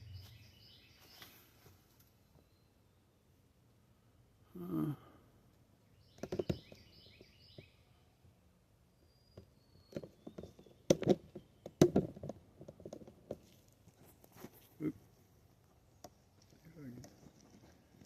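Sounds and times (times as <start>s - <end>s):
bird chirping: 0.0s - 3.2s, 5.8s - 8.2s, 8.9s - 11.8s.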